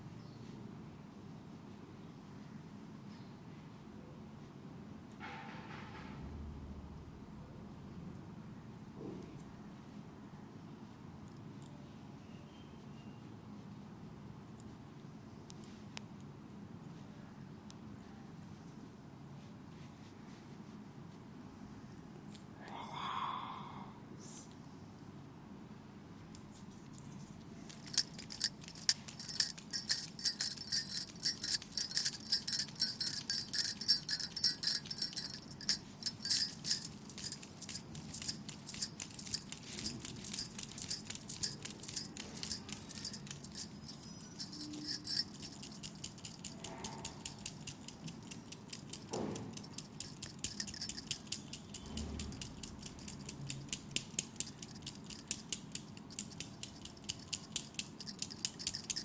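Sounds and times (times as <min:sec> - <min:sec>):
metallic clicking and jingling: 0:27.7 - 0:59.0.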